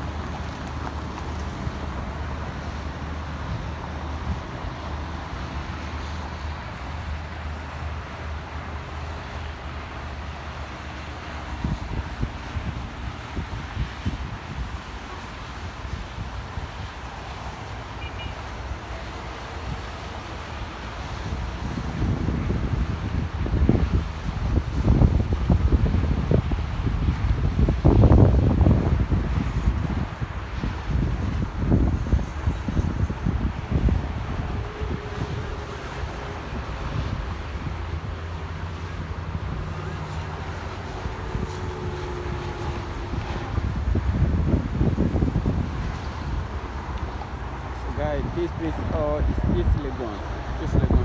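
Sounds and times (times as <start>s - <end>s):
wind buffeting microphone: 0.0s - 6.7s, 10.9s - 17.8s, 18.7s - 51.0s
faint engine hum: 0.0s - 6.9s
passing traffic rumble: 0.0s - 51.0s.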